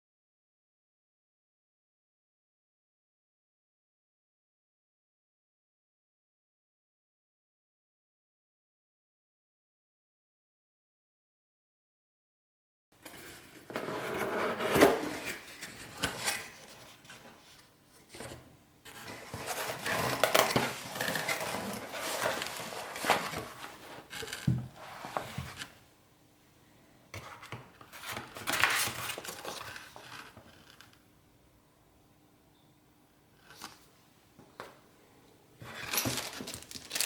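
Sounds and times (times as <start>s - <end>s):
packaging rustling: 19.0s - 24.5s, 35.9s - 37.0s.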